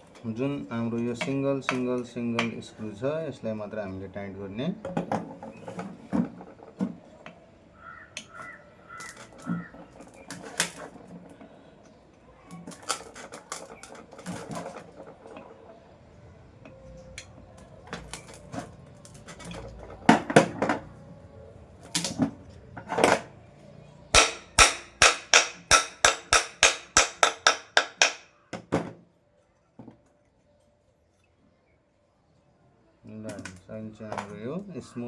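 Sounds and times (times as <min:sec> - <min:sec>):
knocks on metal motor housing: 0:24.2 - 0:29.0.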